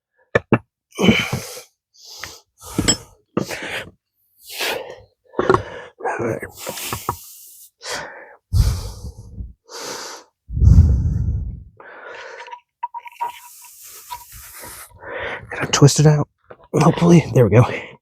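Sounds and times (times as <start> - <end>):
person breathing hard: 1.0 - 6.0, 6.6 - 12.6, 13.8 - 15.5.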